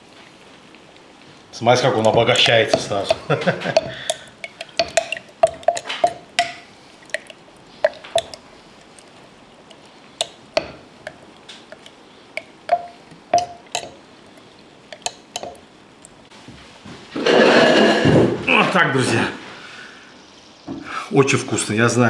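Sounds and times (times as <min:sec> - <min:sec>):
liquid stirring: 0:00.0 - 0:16.3
spoon clinking against glass: 0:01.9 - 0:15.7.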